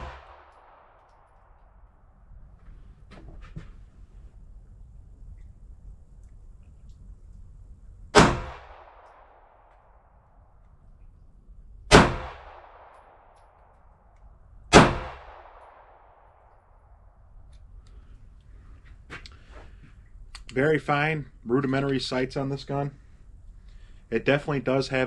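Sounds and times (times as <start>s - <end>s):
pistol shots with echo: 0.0s - 2.0s, 8.1s - 10.4s, 11.9s - 14.1s, 14.7s - 17.0s.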